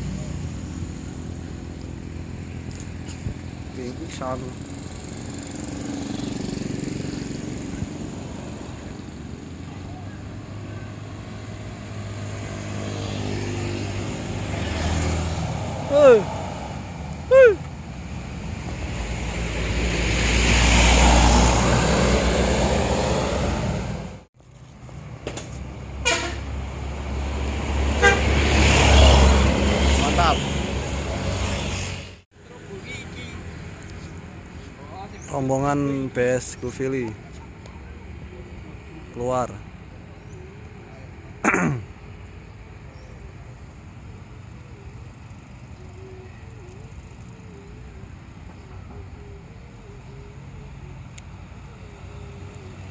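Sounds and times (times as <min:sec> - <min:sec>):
bus passing: 0:00.0 - 0:52.9
quieter traffic: 0:00.0 - 0:52.9
short horn toot: 0:26.0 - 0:26.5.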